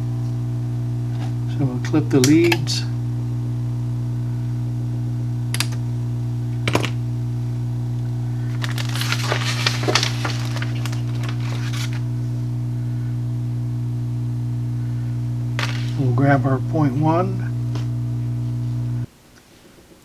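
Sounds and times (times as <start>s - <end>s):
low electrical hum: 0.0s - 20.0s
wire cutters snipping: 5.5s - 5.8s, 6.5s - 7.0s, 8.4s - 12.2s, 15.6s - 16.2s
small clicks and rattling: 8.4s - 12.1s.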